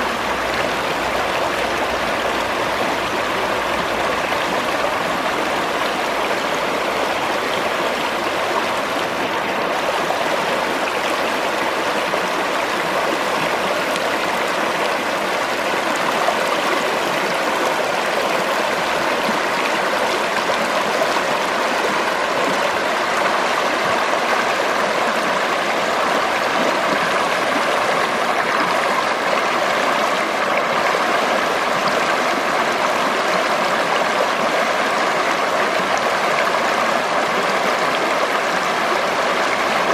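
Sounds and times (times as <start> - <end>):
river water rushing: 0.0 - 39.9.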